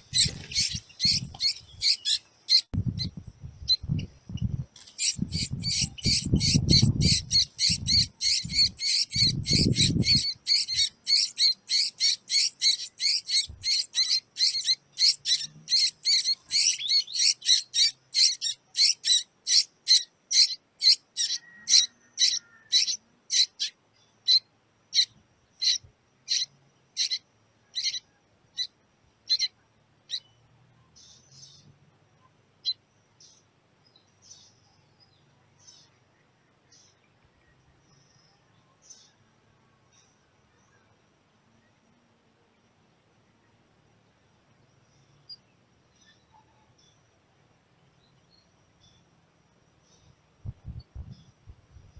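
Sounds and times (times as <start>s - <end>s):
baby bird high chirps: 0.0s - 30.2s.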